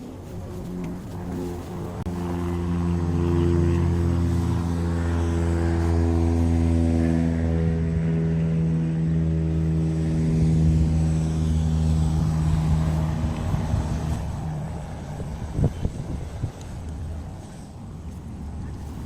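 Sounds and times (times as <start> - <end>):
low engine drone: 0.0 - 19.0.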